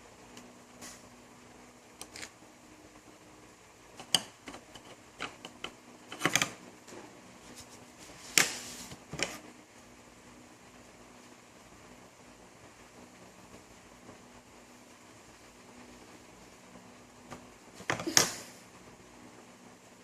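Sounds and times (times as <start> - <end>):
faint steady hum: 0.0 - 20.0.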